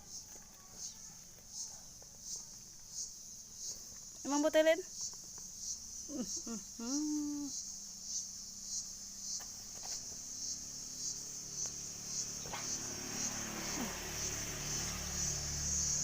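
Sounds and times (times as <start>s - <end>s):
crickets chirping: 0.0s - 16.0s.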